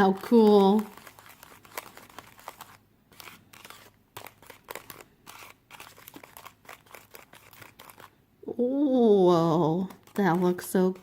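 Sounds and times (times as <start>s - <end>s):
plastic packets crinkling: 0.0s - 8.2s.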